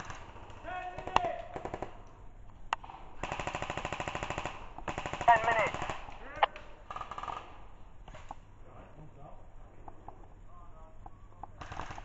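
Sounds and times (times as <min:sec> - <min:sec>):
airsoft gun full-auto bursts: 0:00.0 - 0:00.4, 0:03.2 - 0:06.1, 0:06.9 - 0:07.6, 0:11.6 - 0:12.0.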